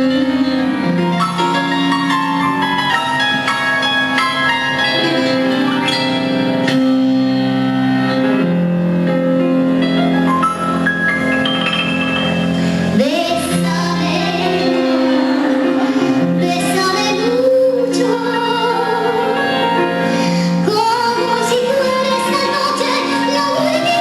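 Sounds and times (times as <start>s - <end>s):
instrumental accompaniment: 0.0s - 24.0s
woman singing: 13.0s - 19.8s, 20.6s - 24.0s.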